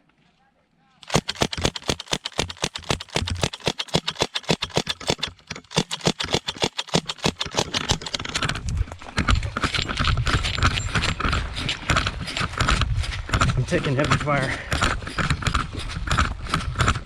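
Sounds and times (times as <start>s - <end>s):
airsoft gun firing rapidly: 1.0s - 8.2s.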